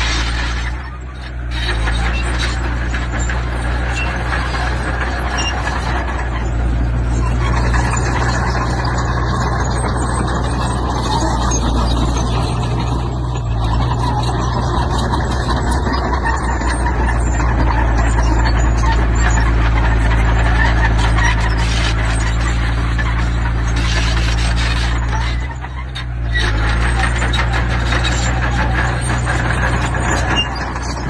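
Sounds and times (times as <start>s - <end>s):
diesel engine drone: 0.0s - 31.0s
grinding clattering machinery: 0.0s - 31.0s.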